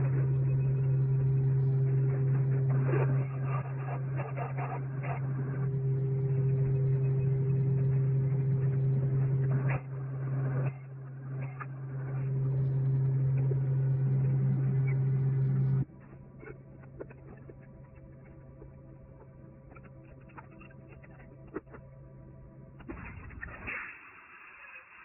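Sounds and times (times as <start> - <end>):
low mechanical hum: 0.0 - 23.8.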